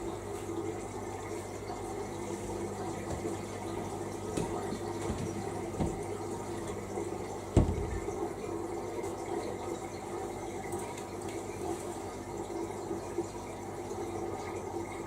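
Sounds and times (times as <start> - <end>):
washing machine humming: 0.0 - 15.0
water running into drum: 0.0 - 15.0
light knocks: 4.3 - 6.2, 7.6 - 8.1.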